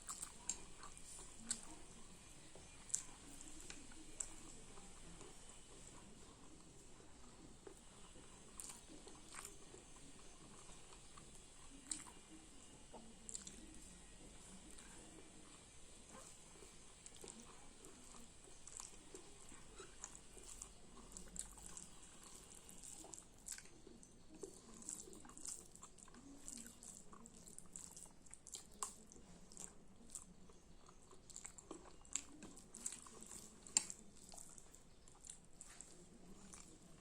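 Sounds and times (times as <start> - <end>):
person chewing: 0.0 - 37.0.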